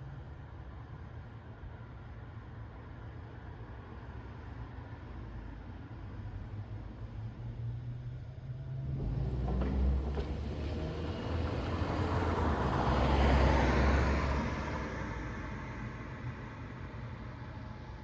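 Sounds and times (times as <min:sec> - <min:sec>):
vehicle passing by: 0:08.7 - 0:16.5.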